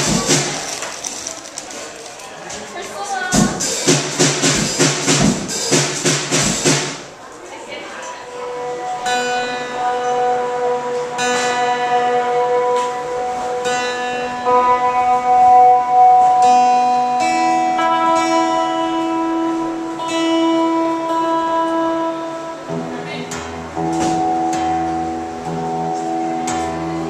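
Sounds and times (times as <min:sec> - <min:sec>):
guitar strumming slow chords: 0:08.3 - 0:27.0.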